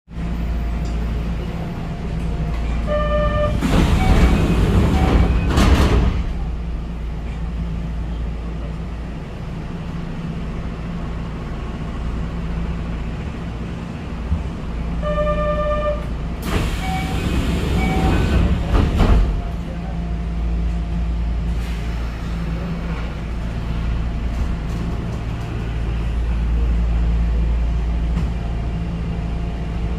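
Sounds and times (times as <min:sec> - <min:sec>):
stopped train humming: 0:00.1 - 0:29.9
train doors sliding: 0:02.0 - 0:07.5, 0:15.5 - 0:19.8, 0:21.4 - 0:26.8.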